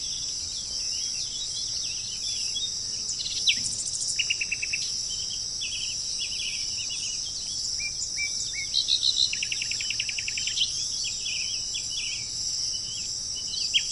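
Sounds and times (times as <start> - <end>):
birds chirping and whistling: 0.0 - 13.9
high-pitched insect chorus: 0.0 - 13.9
rapid bird trill: 0.0 - 13.9.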